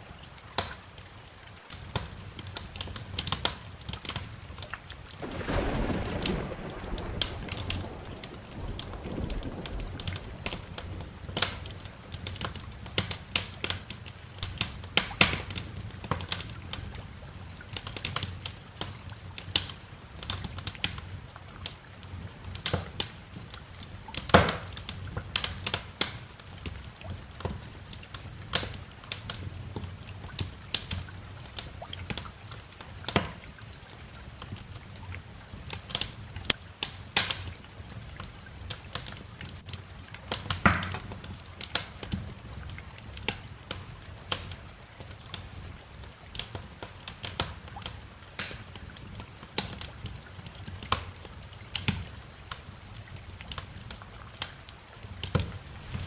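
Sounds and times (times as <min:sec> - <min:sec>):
wood fire crackling and popping: 0:00.6 - 0:56.0
low rumble: 0:05.2 - 0:12.2.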